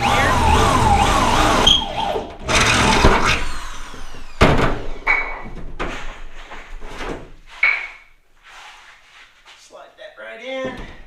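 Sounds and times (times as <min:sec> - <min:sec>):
electric drill whirring: 0:00.0 - 0:05.0.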